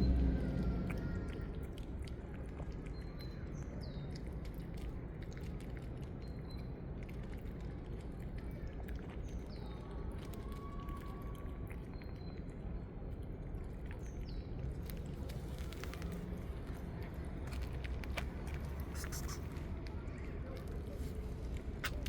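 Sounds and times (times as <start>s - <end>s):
low outdoor hum: 0.0s - 3.0s.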